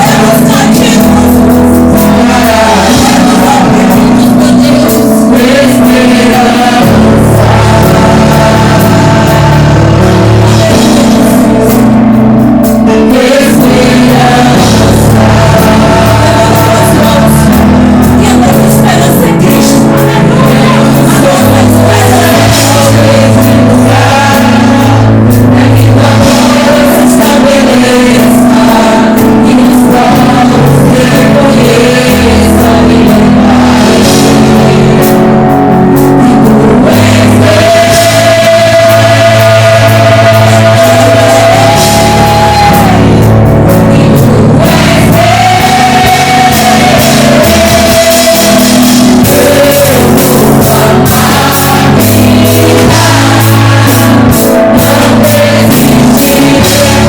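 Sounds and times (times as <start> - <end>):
band accompaniment: 0.0 - 57.0.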